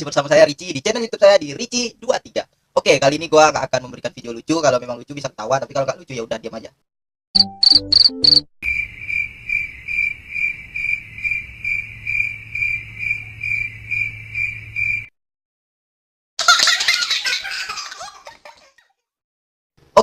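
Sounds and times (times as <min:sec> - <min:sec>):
cricket chirping: 0:07.7 - 0:15.1.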